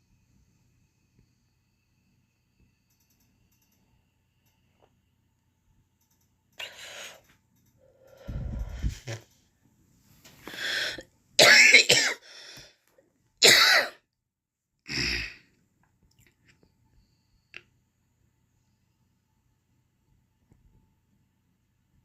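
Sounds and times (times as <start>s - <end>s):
person coughing harshly: 10.8s - 12.3s, 13.4s - 14.0s.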